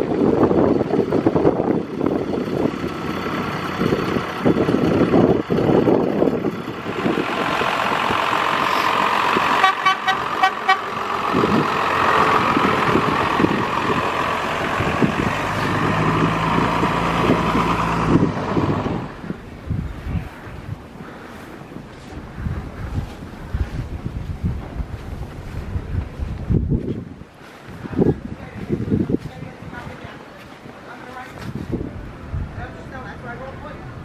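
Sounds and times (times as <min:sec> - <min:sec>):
heavy vehicle engine humming: 0:00.0 - 0:26.6
street traffic: 0:00.0 - 0:26.8, 0:27.6 - 0:34.0
wind buffeting microphone: 0:00.0 - 0:34.0
vehicle horn short beeps: 0:09.6 - 0:10.9.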